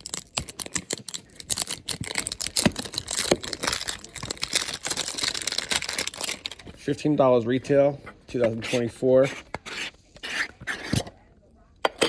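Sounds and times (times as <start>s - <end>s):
packaging being ripped open: 0.0s - 6.6s.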